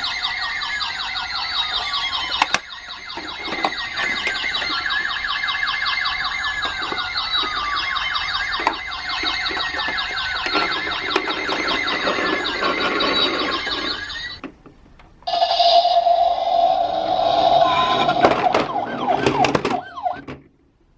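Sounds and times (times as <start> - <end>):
electronic toy siren warbling: 0.0 - 14.4, 15.3 - 20.3
siren steady held tone: 0.0 - 14.4, 15.2 - 20.4
low rumble: 15.6 - 19.1.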